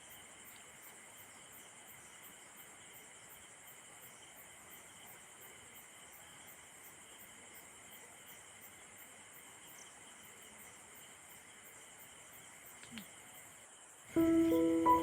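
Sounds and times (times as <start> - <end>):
insects chirping: 0.0 - 15.0
low background hiss: 0.0 - 15.0
small click: 12.8 - 13.1.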